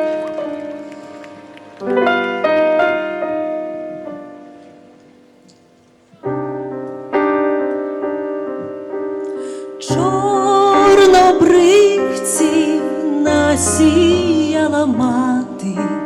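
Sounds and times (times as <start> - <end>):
piano playing slow chords: 0.0 - 16.0
woman singing with vibrato: 9.8 - 16.0.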